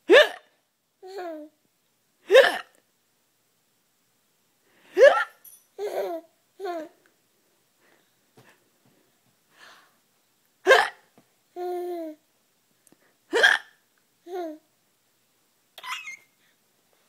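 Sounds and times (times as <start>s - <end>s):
adult fake hiccups: 0.0s - 0.6s, 2.3s - 2.8s, 5.0s - 5.3s, 10.6s - 11.0s, 13.3s - 13.8s
small child laughing: 5.0s - 7.0s, 15.8s - 16.3s.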